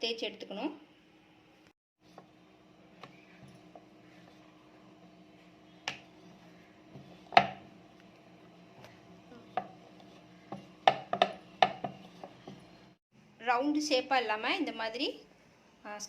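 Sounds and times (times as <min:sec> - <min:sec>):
rolling pin knocking on board: 0:07.0 - 0:07.7, 0:10.5 - 0:12.6.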